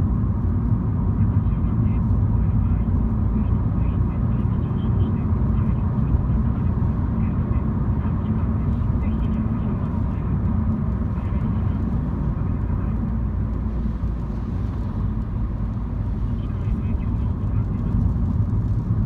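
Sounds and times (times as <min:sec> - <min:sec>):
car engine and road noise: 0:00.0 - 0:19.0.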